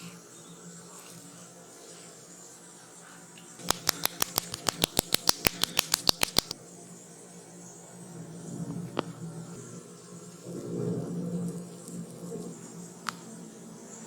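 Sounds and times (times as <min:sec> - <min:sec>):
hands slapping head: 0:03.6 - 0:06.6.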